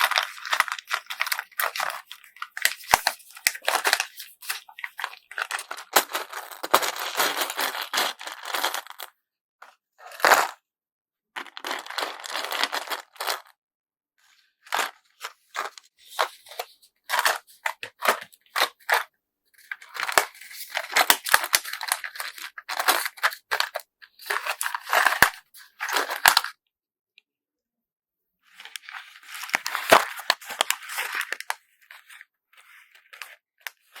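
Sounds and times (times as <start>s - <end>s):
packaging rustling and crinkling: 0.0s - 9.0s, 14.8s - 19.0s, 19.7s - 26.5s, 28.6s - 34.0s.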